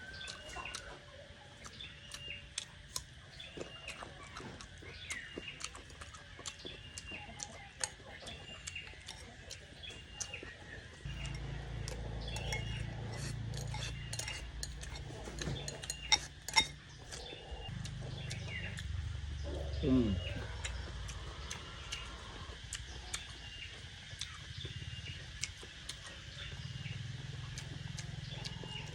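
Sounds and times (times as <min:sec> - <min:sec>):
birds chirping: 0:00.0 - 0:28.9
utensils clinking against bowl: 0:11.1 - 0:17.3.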